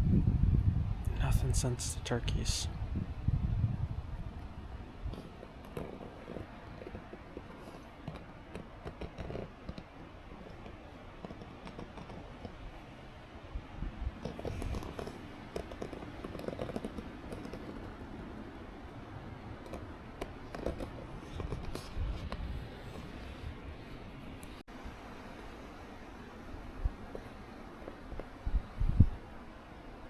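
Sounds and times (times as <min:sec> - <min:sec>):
wind buffeting microphone: 0:00.0 - 0:08.7, 0:12.3 - 0:24.6, 0:27.9 - 0:29.4
handling clicks and rustles: 0:05.0 - 0:13.0, 0:14.1 - 0:18.3, 0:19.2 - 0:24.7.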